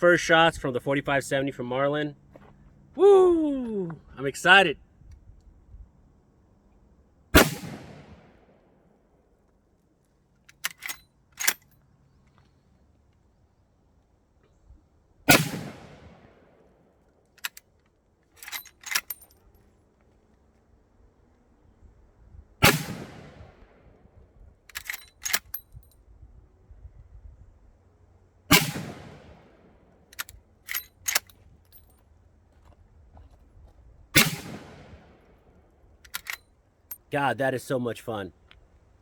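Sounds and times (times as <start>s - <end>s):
rifle shots ringing out: 7.4s - 8.5s, 15.3s - 16.5s, 22.6s - 23.7s, 28.5s - 29.7s, 34.2s - 35.3s
rifle lever metallic clacks: 10.5s - 11.8s, 17.4s - 17.7s, 18.4s - 19.4s, 24.7s - 25.7s, 30.1s - 31.9s, 36.0s - 37.0s.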